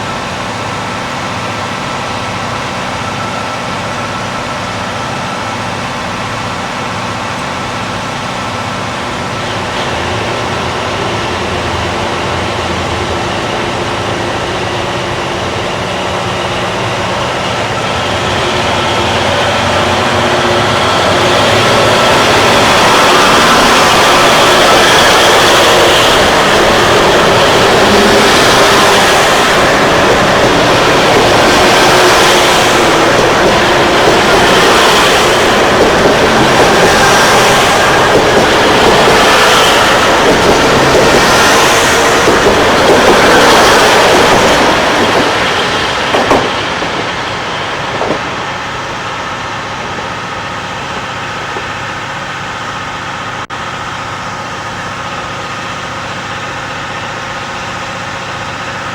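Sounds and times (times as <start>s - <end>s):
diesel engine idling: 0.0s - 43.2s
diesel railcars running past: 0.0s - 58.9s.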